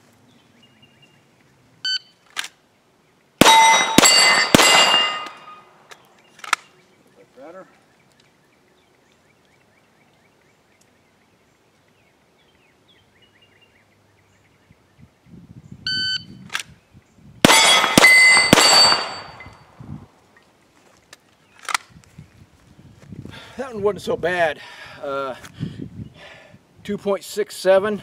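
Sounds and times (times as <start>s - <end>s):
pistol shots: 3.4s - 5.6s, 17.4s - 19.6s
steel target ringing: 3.4s - 5.7s, 17.5s - 19.6s
shot timer beep: 15.9s - 16.3s.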